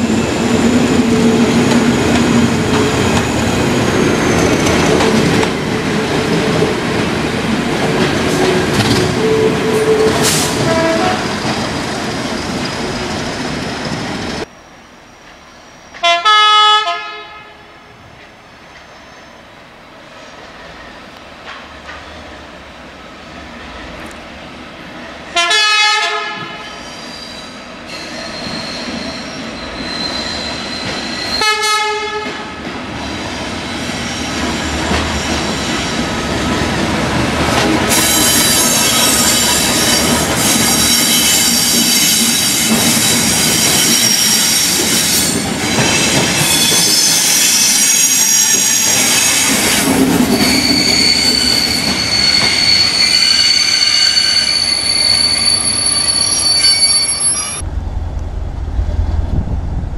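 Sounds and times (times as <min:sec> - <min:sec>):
train passing close by: 0:00.0 - 0:59.9
train horn blasts: 0:09.0 - 0:11.4, 0:16.0 - 0:17.8, 0:25.4 - 0:26.8, 0:31.4 - 0:32.6
wheel squeal on rails: 0:26.6 - 0:31.6, 0:37.9 - 0:57.6.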